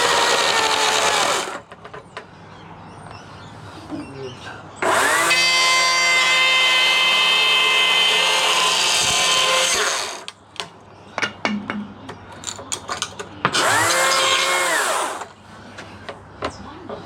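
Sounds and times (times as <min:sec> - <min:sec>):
chainsaw revving: 0:00.0 - 0:01.6, 0:04.8 - 0:10.3, 0:13.6 - 0:15.3.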